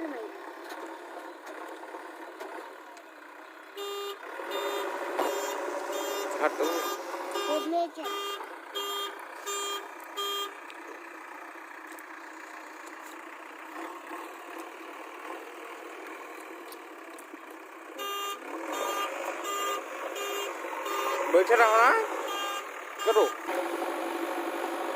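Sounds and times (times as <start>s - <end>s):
reversing alarm beeping: 3.8s - 10.6s, 18.0s - 21.3s, 22.3s - 23.4s.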